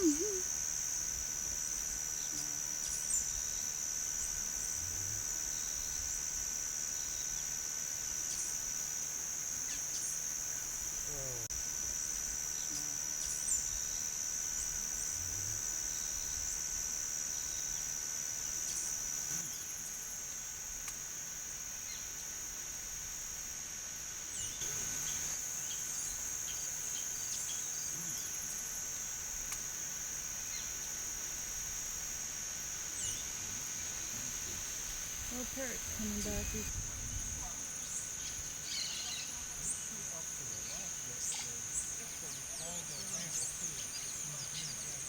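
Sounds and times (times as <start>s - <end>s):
faint bird calls: 0.0s - 0.5s, 37.8s - 39.8s
insect chorus drone: 0.0s - 45.0s.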